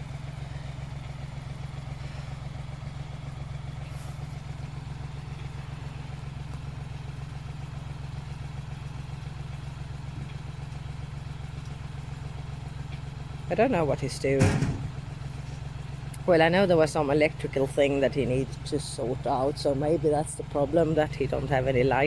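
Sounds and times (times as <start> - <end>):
low mechanical hum: 0.0 - 22.0.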